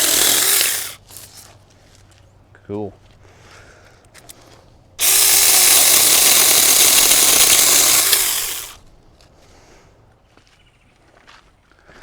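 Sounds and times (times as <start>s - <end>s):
electric chainsaw cutting branch: 0.0s - 1.0s, 5.0s - 8.8s.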